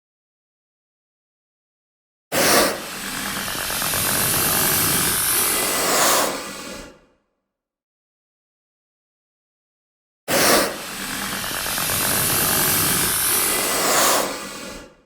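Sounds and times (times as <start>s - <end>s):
creature hissing: 2.4s - 6.8s, 10.3s - 14.9s.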